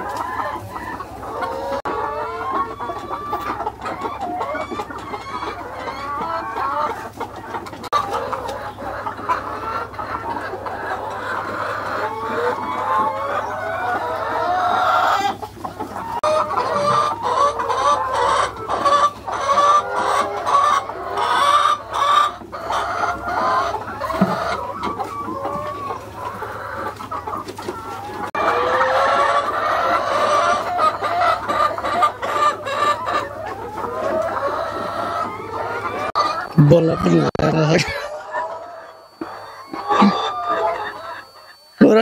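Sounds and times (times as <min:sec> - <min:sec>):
hens clucking and cackling: 0:00.0 - 0:42.0.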